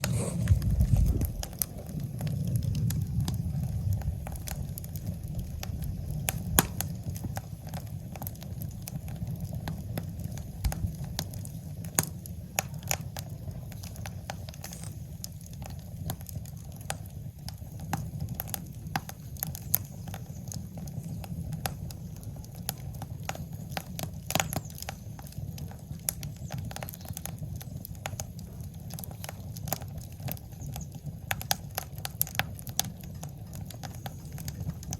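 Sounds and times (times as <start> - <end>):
low rumble of flames: 0.0 - 34.9
wood fire crackling and popping: 0.0 - 34.9.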